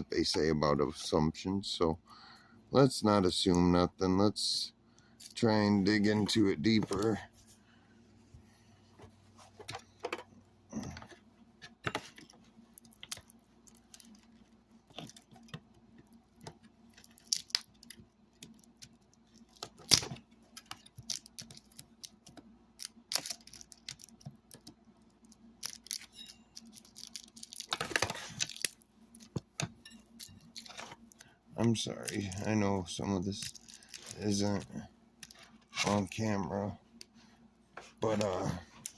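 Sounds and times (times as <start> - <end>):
metal tools clicking and clinking: 25.8 - 28.7.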